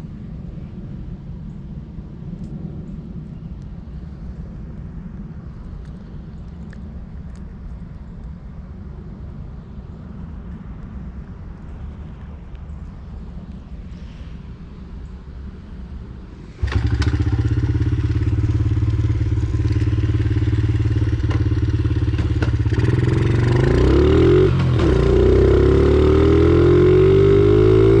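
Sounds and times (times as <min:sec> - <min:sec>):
dirt bike engine revving: 0:16.6 - 0:28.0.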